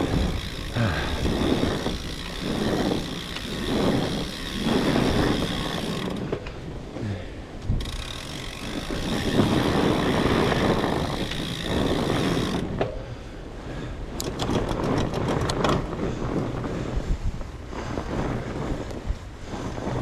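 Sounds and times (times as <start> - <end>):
sharp clicks from bike: 0.0 - 6.6, 7.6 - 13.0, 14.2 - 15.9
bike tyres rumbling on snow: 0.0 - 20.0
wind on microphone: 0.0 - 20.0.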